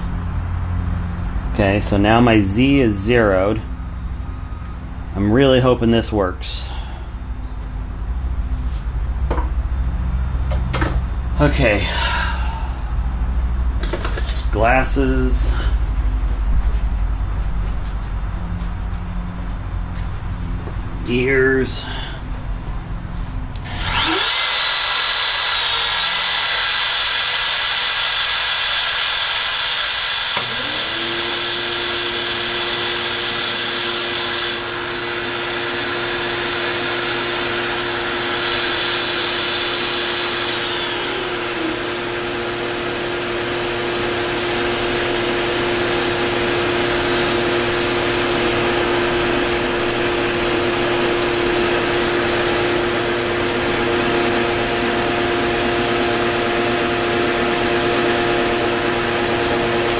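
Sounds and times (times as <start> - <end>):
motor humming low: 0.0 - 59.9
router spindle whining: 23.6 - 59.9.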